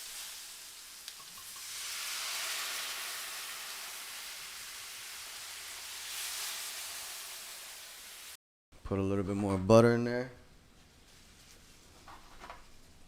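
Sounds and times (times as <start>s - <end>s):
hot pan sizzling and hissing: 0.0s - 8.4s.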